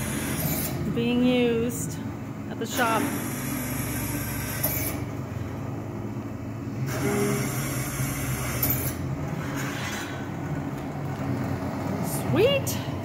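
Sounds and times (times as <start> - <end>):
drill press motor hum: 0.0 - 13.0.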